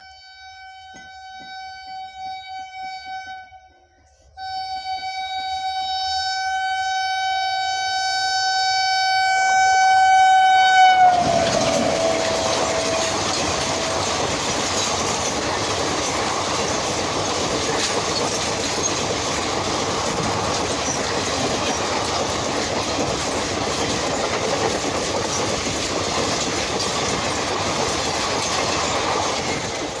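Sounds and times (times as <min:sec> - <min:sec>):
train air horn blasts: 0:00.0 - 0:15.4
train coaches rushing past: 0:10.1 - 0:30.0.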